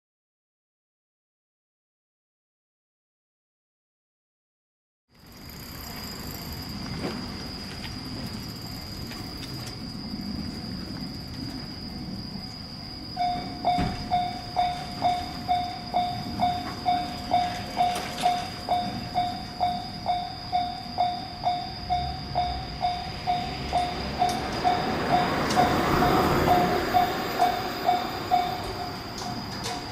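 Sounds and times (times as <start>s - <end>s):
level crossing warning bell: 12.5s - 29.9s.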